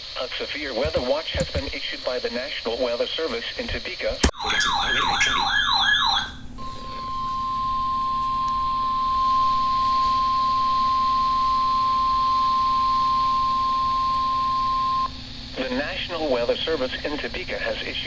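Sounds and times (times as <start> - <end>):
steady loud alarm beep: 4.3 - 15.2
warbling alarm tone: 4.4 - 15.1.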